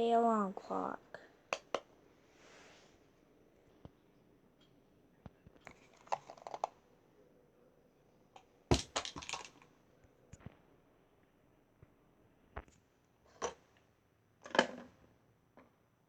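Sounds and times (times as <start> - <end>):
hard objects clicking and clattering: 5.5 - 6.8, 8.4 - 9.7.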